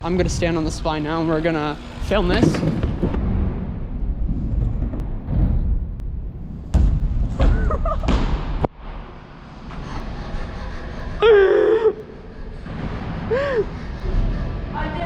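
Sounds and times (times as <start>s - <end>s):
bike rumbling on concrete: 0.0s - 8.6s.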